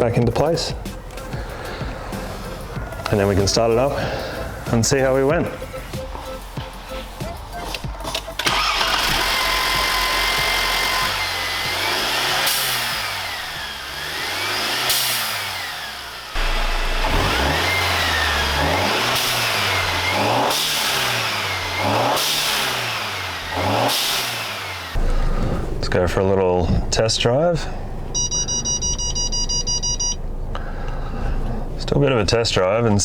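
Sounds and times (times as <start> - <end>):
car engine revving: 3.9 - 26.2.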